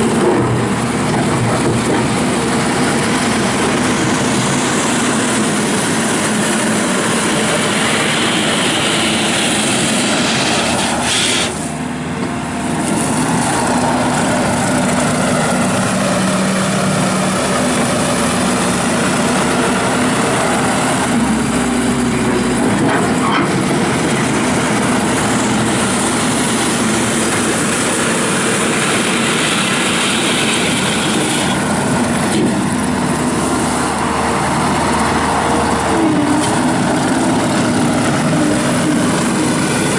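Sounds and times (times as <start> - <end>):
loader diesel engine running: 0.0 - 39.9.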